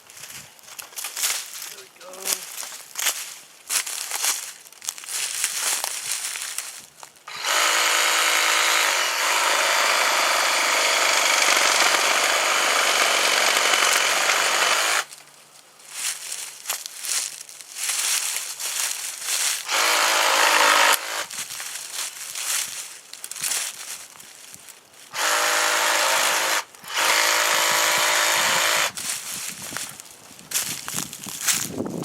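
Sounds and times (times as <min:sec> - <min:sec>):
brush crackling and rustling: 0:00.0 - 0:07.3, 0:15.0 - 0:25.1, 0:28.9 - 0:32.0
reciprocating saw motor whine: 0:07.3 - 0:15.0, 0:19.7 - 0:21.3, 0:25.2 - 0:28.9
saw blade rasping through wood: 0:07.3 - 0:15.1, 0:19.6 - 0:21.3, 0:25.1 - 0:29.0.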